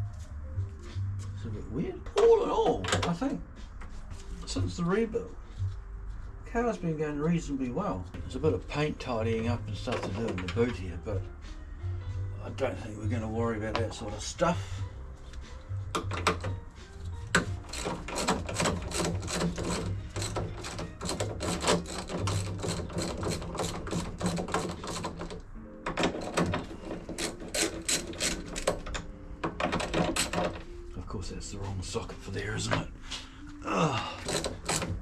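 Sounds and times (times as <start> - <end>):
socket ratchet clicking: 17.3 - 30.6, 34.2 - 35.0.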